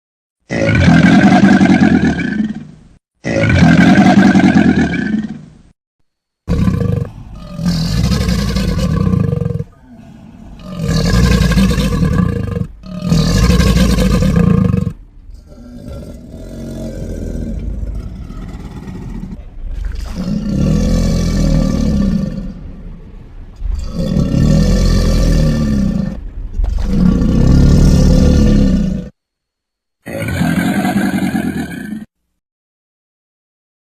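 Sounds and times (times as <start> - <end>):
deep rumbling crocodile growls: 6.5 - 29.2.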